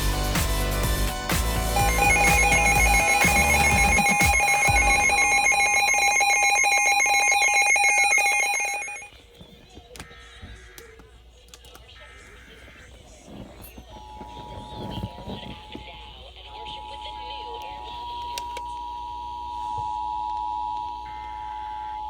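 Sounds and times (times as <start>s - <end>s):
warbling electronic alert tone: 1.7s - 9.1s.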